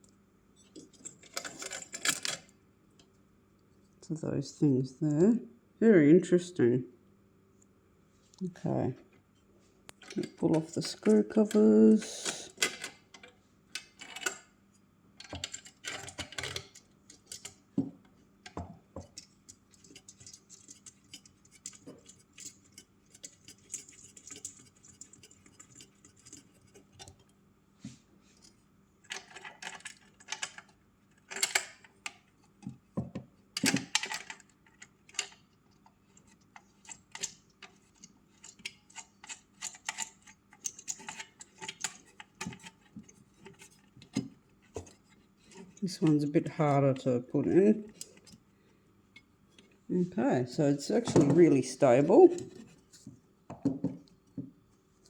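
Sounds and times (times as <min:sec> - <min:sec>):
small clicks and rattles of screws: 0:12.6 - 0:14.5, 0:15.2 - 0:17.6, 0:28.4 - 0:32.4, 0:33.6 - 0:44.1.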